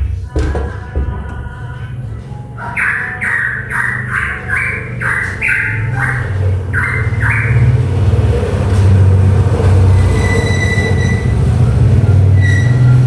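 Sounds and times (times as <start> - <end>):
songbird harsh notes: 2.5 - 9.1
thin high squeal: 9.9 - 13.0.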